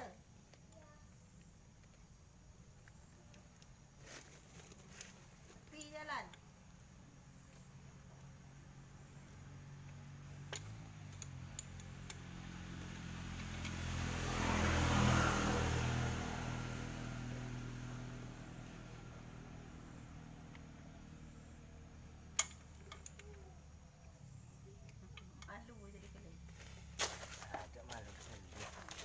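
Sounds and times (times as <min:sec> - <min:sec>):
motor vehicle passing by: 0:07.3 - 0:29.0.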